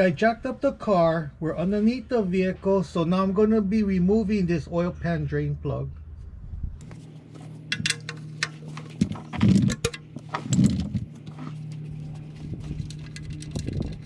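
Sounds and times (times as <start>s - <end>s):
low hum: 0.0s - 14.0s
metal hand tools clinking: 7.6s - 11.8s.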